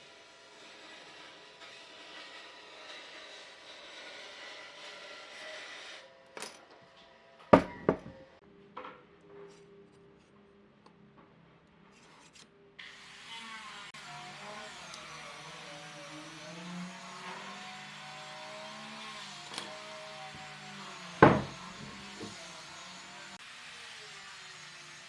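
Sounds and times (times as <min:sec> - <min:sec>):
power tool humming: 0:15.6 - 0:23.1
sharp wooden knocks: 0:21.2 - 0:22.3.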